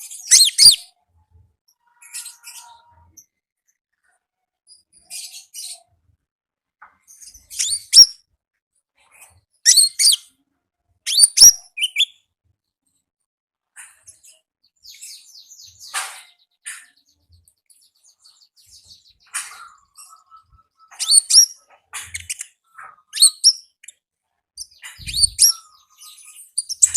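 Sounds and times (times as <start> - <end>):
bird chirping: 0.0 - 1.0, 1.7 - 3.3, 7.0 - 8.2, 11.1 - 12.2, 13.8 - 24.0, 24.6 - 26.9.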